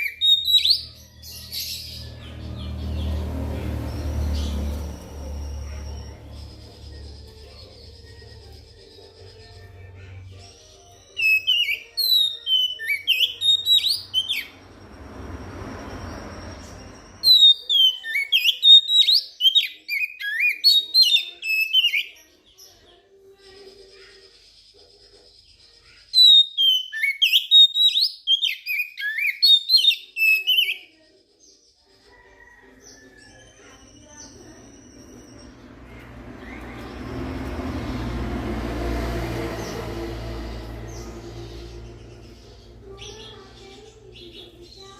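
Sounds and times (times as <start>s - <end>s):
bird singing whistles and chirps: 0.0s - 2.2s, 10.9s - 15.1s, 15.8s - 22.2s, 26.0s - 30.9s
soft rushing noise: 14.0s - 17.3s, 34.4s - 44.8s.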